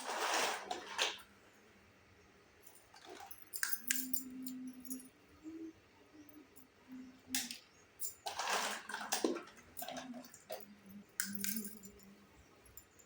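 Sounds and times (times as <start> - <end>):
toy pieces clicking and clinking: 7.4 - 12.0.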